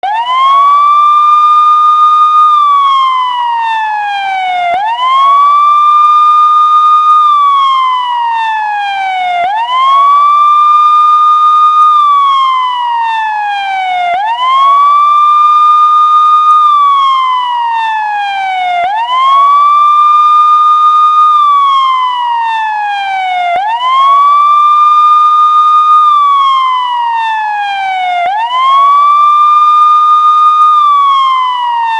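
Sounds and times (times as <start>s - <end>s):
police siren wailing: 0.0s - 31.9s.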